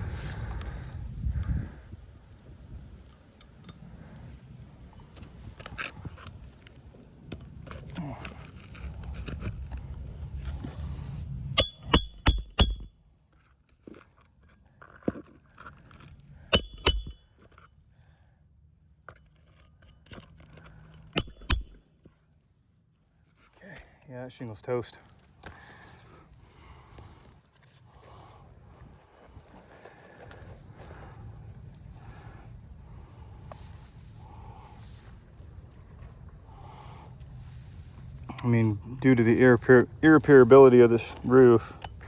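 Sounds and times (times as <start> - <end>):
wind buffeting microphone: 0.0 - 3.1
sharp metallic clinks: 11.6 - 13.2, 16.5 - 17.8, 21.1 - 22.1.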